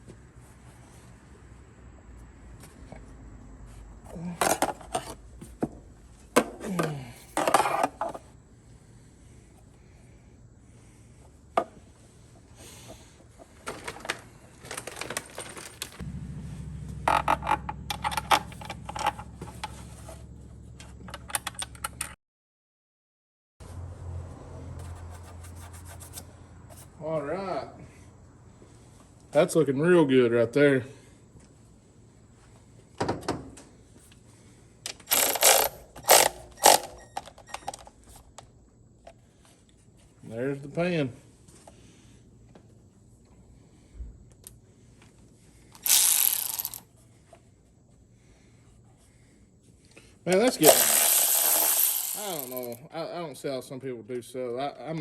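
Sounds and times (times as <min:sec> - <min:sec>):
low steady hum: 0:16.0 - 0:21.4
rattling clicking bursts: 0:34.9 - 0:37.0, 0:45.8 - 0:46.8, 0:50.6 - 0:52.8
metal parts clinking: 0:35.0 - 0:37.7, 0:45.8 - 0:46.8, 0:50.5 - 0:52.8.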